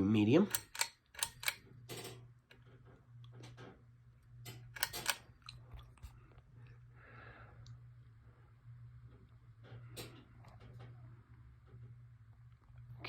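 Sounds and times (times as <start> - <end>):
fan clicks and rattles: 0.0 - 5.4, 9.1 - 11.9.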